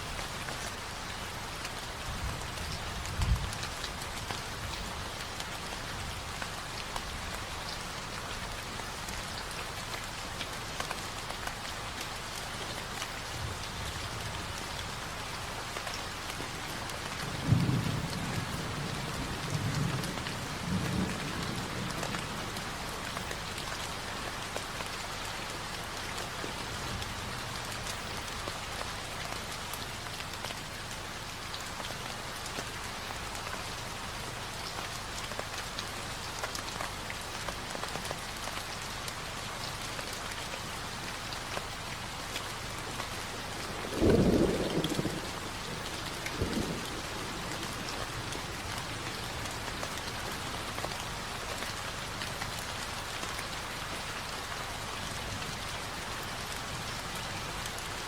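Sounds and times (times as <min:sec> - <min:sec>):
steady rain: 0:00.0 - 0:58.0
thunder rumbling: 0:43.7 - 0:49.0.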